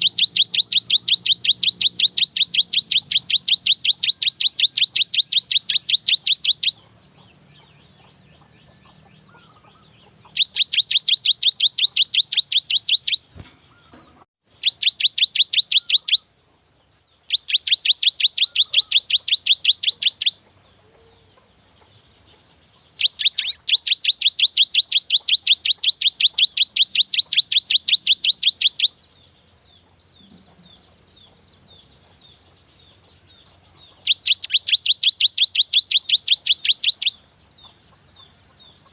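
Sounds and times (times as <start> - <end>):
tit singing high repeated notes: 0.0 - 6.8, 10.4 - 13.3.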